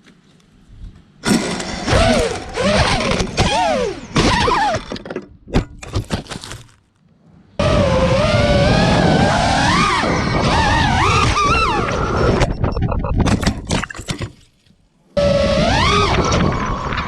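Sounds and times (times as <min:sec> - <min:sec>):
quadcopter motors whining: 0:01.2 - 0:04.9, 0:07.6 - 0:12.6, 0:15.2 - 0:17.0
drone crash cracks and knocks: 0:01.2 - 0:05.0.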